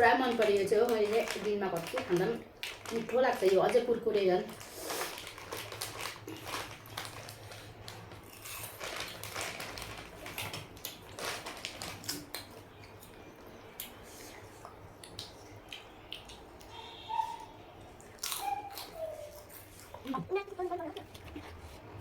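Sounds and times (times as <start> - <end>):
crunchy snack being chewed: 4.5 - 13.2, 18.0 - 20.0.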